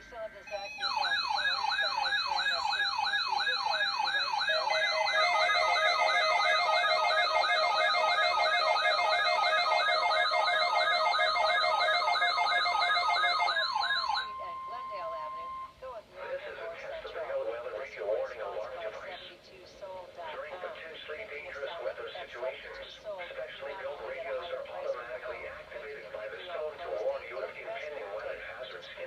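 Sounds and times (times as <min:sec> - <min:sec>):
steady alert tones: 0:00.4 - 0:15.7
electronic siren warbling: 0:00.5 - 0:15.7.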